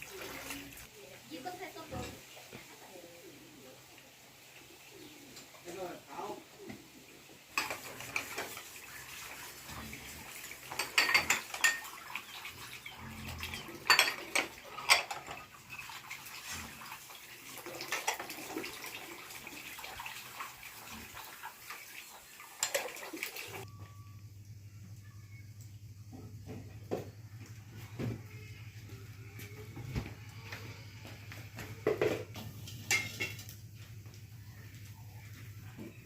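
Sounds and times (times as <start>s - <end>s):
dishes and utensils clattering: 7.5s - 16.7s, 17.6s - 18.8s, 22.6s - 23.6s, 31.6s - 33.6s.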